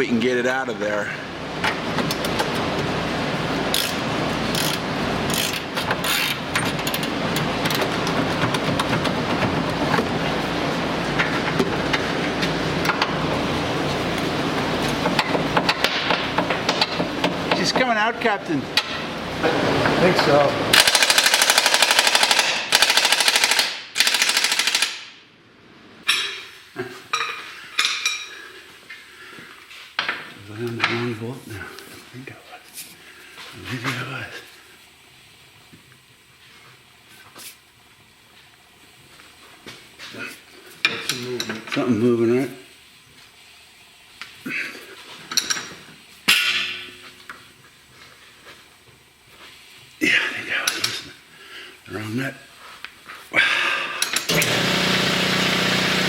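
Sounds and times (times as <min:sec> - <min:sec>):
ratchet wrench clicking: 0:03.7 - 0:07.1, 0:20.8 - 0:25.0
pneumatic impact tool hammering: 0:03.7 - 0:09.0, 0:20.7 - 0:25.2, 0:54.0 - 0:56.0.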